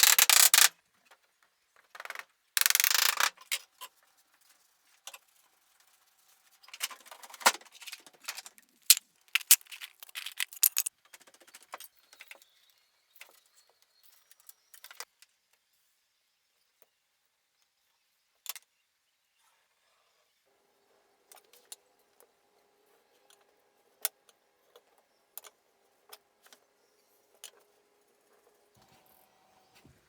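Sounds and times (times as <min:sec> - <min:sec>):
tools tapping on wood: 0:09.4 - 0:10.9.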